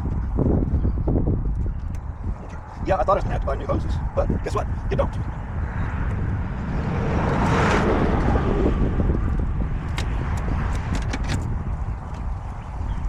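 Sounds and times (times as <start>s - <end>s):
steady low rumble: 0.0s - 13.0s
vehicle passing by: 4.9s - 12.1s.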